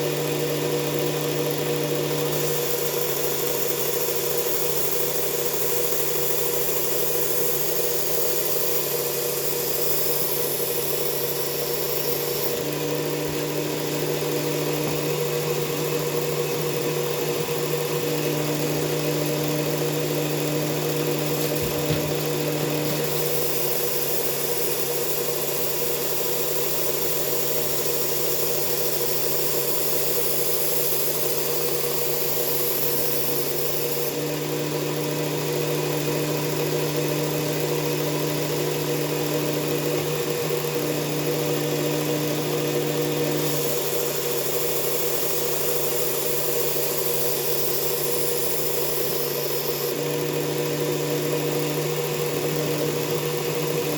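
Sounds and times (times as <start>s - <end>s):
belt sander sharpening knife: 45.8s - 50.0s.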